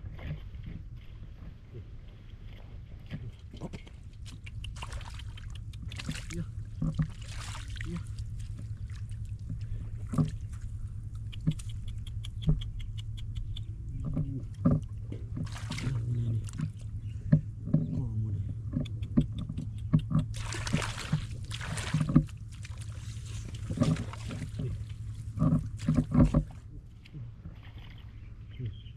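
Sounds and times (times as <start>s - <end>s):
water splashing and sloshing: 0.0s - 13.2s, 13.8s - 28.8s
steady low hum: 0.0s - 28.9s
quick ticks: 4.2s - 6.2s, 11.1s - 14.2s, 18.7s - 20.4s
knocks and clicks: 16.6s - 20.4s, 24.8s - 26.6s.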